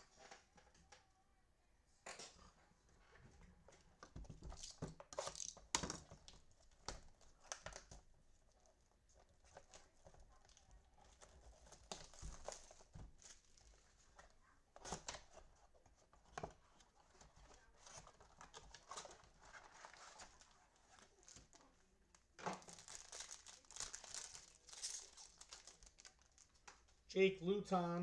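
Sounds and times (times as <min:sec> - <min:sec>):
foil wrappers crinkling and tearing: 0:04.4 - 0:08.6, 0:09.4 - 0:14.2, 0:17.5 - 0:27.0.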